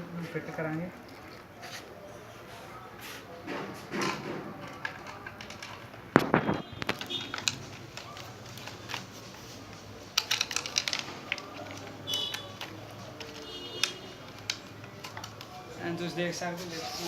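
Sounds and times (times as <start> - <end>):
plywood parts knocking and clattering: 3.5 - 9.0.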